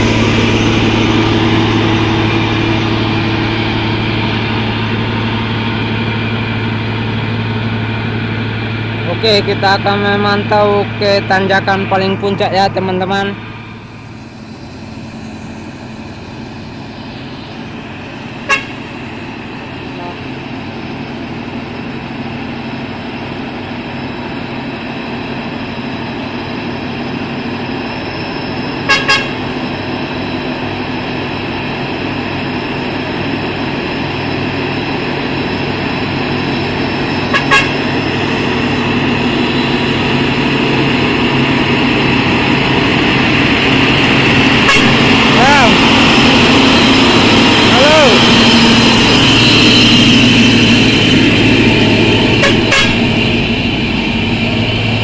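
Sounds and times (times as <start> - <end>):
truck engine climbing: 0.0 - 55.0
short horn toots: 18.5 - 18.8, 28.9 - 29.4, 37.3 - 37.9, 44.6 - 45.1, 52.4 - 53.2.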